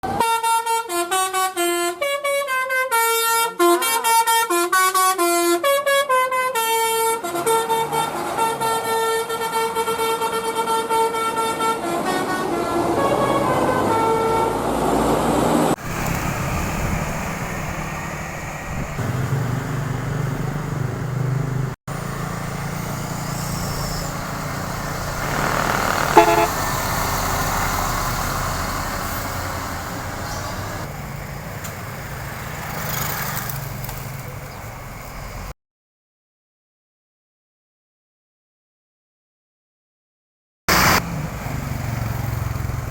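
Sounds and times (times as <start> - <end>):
multi-tone air horn melody: 0.1 - 14.8, 25.0 - 27.2
passing traffic: 6.7 - 35.5, 40.7 - 42.9
bus engines: 6.9 - 35.5, 40.7 - 42.9
short horn blast: 24.9 - 27.2.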